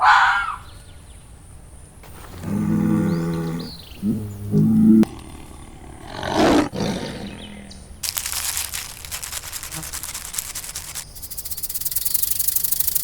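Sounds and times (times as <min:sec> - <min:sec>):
rasping hiss: 0:02.0 - 0:07.0, 0:08.1 - 0:13.0
breathy burst: 0:02.0 - 0:07.4
large animal low calls: 0:02.0 - 0:07.8.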